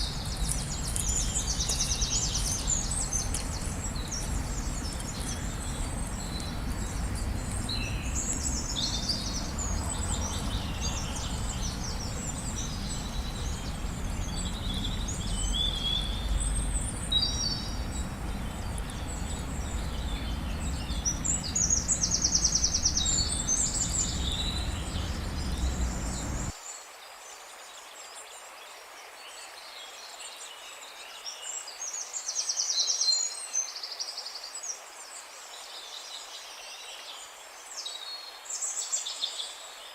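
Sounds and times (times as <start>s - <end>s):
low steady rumble: 0.0s - 26.5s
birds singing and calling: 0.0s - 26.8s.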